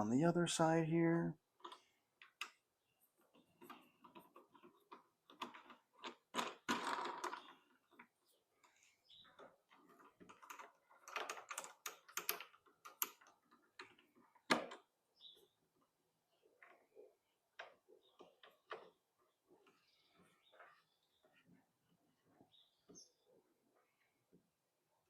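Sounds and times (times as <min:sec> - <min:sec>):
bolts being screwed by hand: 0:03.3 - 0:14.9.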